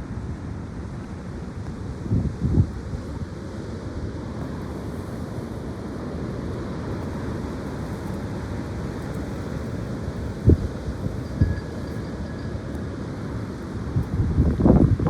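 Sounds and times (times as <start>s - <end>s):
wind rumble on microphone: 0.0s - 15.0s
strong wind blowing: 1.8s - 3.8s, 10.0s - 11.8s, 13.3s - 15.0s.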